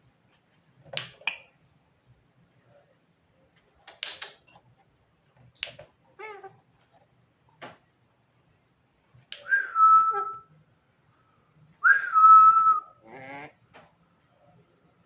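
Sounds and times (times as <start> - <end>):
bird whistling: 9.4 - 10.5.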